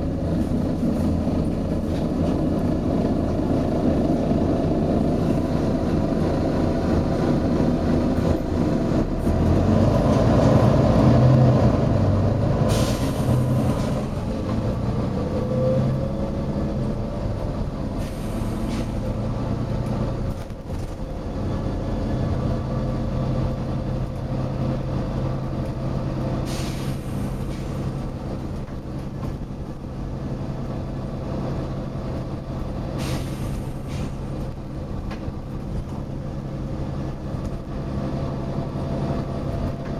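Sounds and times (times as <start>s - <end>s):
bus diesel engine running: 0.0s - 39.9s
compressed air hisses: 26.5s - 27.8s, 33.0s - 34.2s.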